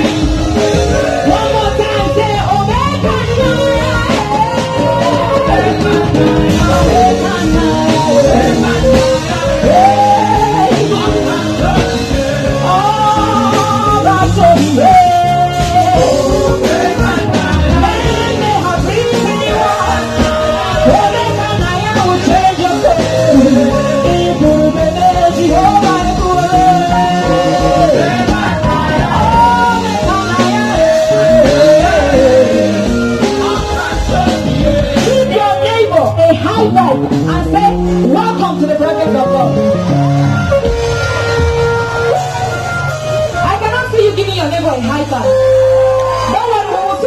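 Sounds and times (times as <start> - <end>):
singing: 0.0 - 36.5
band with drums and bass: 0.0 - 47.0.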